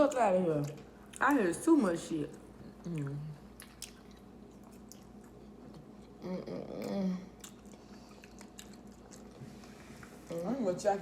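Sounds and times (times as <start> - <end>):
chewing steak: 2.9 - 6.2, 7.3 - 10.2.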